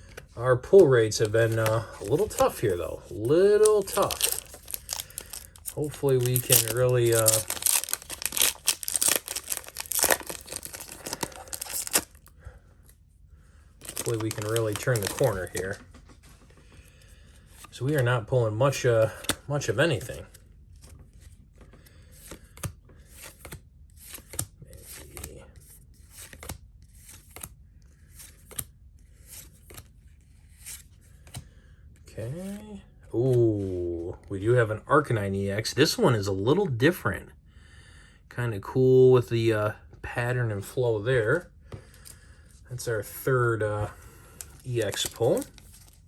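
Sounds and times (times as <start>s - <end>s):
foil wrapper tearing and crinkling: 1.3s - 12.3s, 13.8s - 15.8s, 44.3s - 46.0s.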